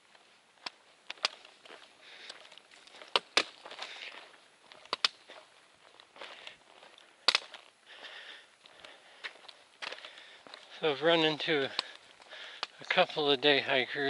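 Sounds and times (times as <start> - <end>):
footsteps on rocky trail: 0.0 - 14.0.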